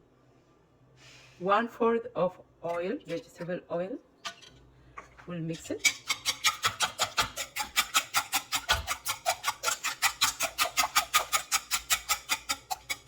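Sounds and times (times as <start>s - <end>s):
whisk clinking in mixing bowl: 5.6s - 13.0s.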